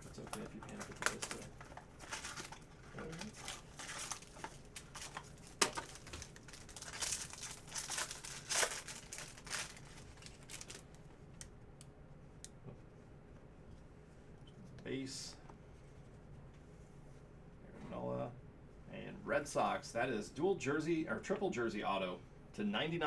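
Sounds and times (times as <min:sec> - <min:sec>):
packaging crinkling and tearing: 0:00.0 - 0:11.5.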